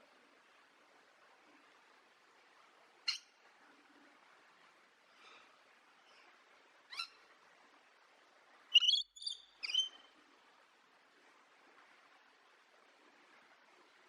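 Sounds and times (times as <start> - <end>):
bird calling sharply: 8.8 - 9.9.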